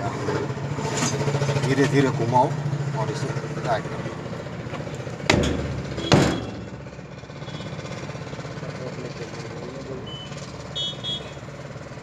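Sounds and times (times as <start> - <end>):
engine humming: 0.0 - 12.0
sharp metal clanks: 5.2 - 6.9.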